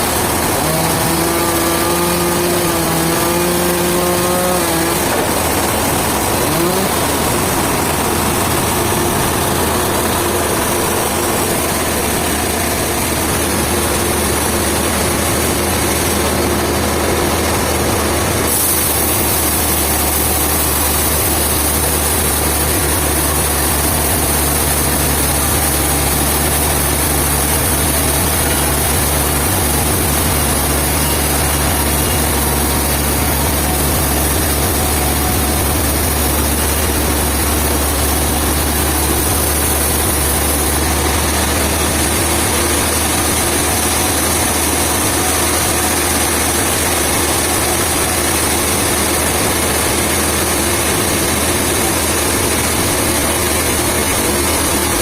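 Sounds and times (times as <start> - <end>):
sawmill machinery humming: 0.0 - 55.0.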